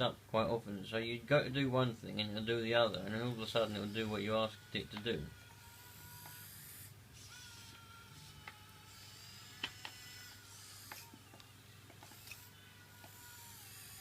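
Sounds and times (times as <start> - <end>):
toy gear motors whining: 3.1 - 14.0.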